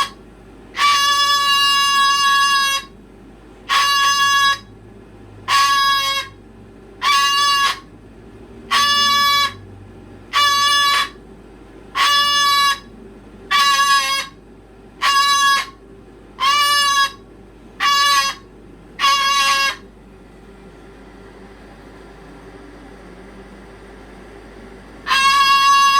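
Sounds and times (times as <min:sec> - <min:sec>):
pet animal calling loudly: 0:08.7 - 0:09.6, 0:19.0 - 0:19.8, 0:25.1 - 0:25.9.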